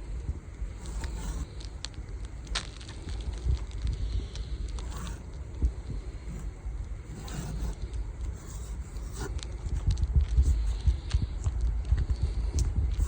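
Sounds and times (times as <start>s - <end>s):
light ticks and crackles: 0.0s - 13.0s
soft hissing swells: 0.0s - 13.0s
wind buffeting microphone: 0.0s - 13.0s.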